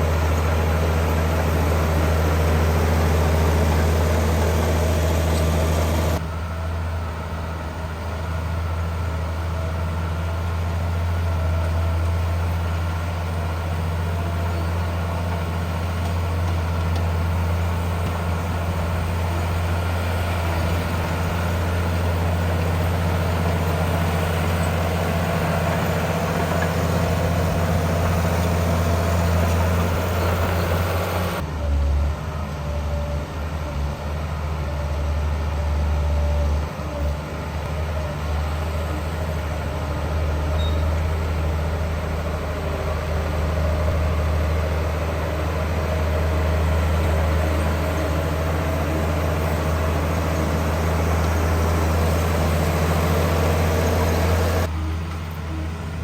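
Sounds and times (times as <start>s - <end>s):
heavy diesel engine droning: 0.0s - 56.0s.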